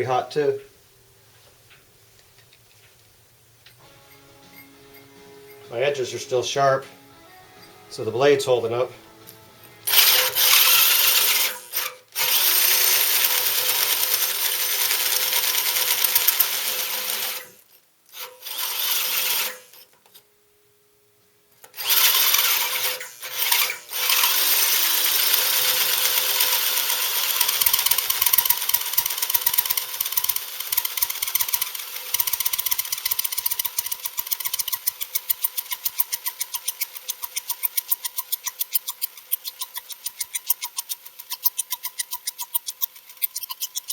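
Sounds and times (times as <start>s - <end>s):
drill hole saw cutting iron: 9.8s - 19.9s, 21.7s - 43.9s
fast ticking rattle: 9.9s - 16.8s, 21.8s - 43.9s.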